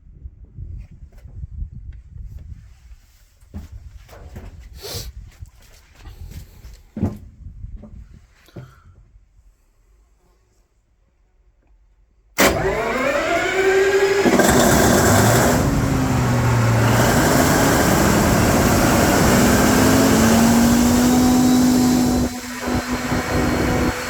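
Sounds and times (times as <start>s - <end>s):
diesel generator engine running: 12.4s - 24.0s
rising whine: 12.4s - 24.0s.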